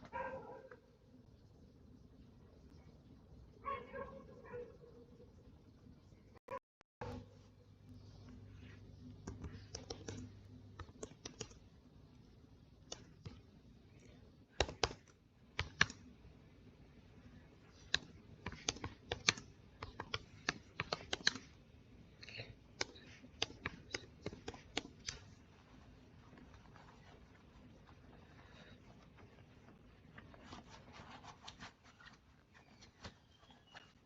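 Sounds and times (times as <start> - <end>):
computer keyboard typing: 9.2 - 11.6.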